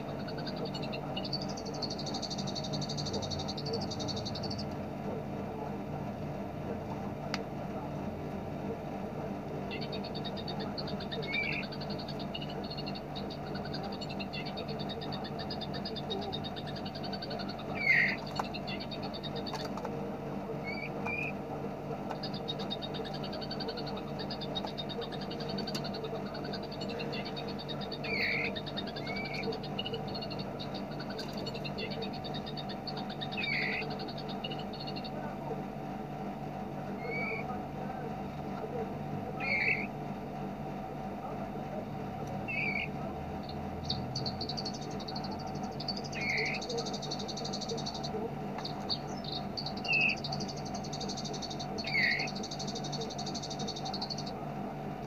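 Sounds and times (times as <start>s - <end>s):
bird chirps: 0.0s - 4.8s, 9.7s - 19.8s, 20.6s - 21.4s, 22.1s - 35.2s, 37.0s - 37.6s, 39.4s - 39.9s, 42.4s - 54.4s
low background hum: 0.0s - 55.0s.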